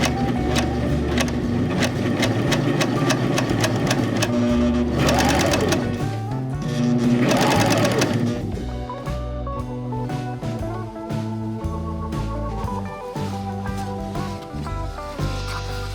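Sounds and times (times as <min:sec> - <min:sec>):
overlock sewing machine stitching: 0:00.0 - 0:08.5
background music with steady beat: 0:00.0 - 0:15.9.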